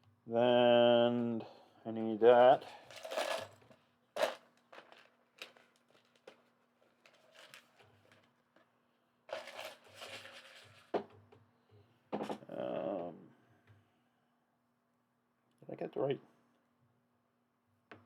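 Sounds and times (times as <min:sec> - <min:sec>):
plastic pieces rustling: 0:02.6 - 0:08.2, 0:09.3 - 0:10.6.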